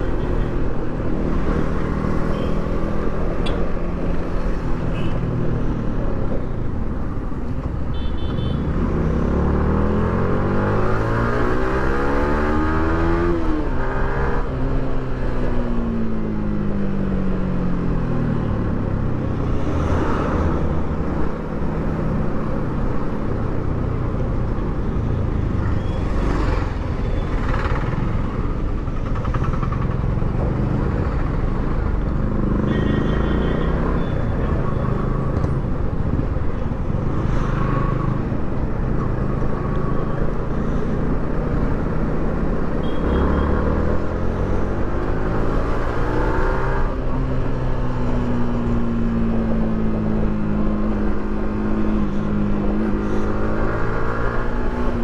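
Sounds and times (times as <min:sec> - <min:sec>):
road and wind noise: 0:00.0 - 0:55.0
motorcycle engine: 0:25.4 - 0:38.0.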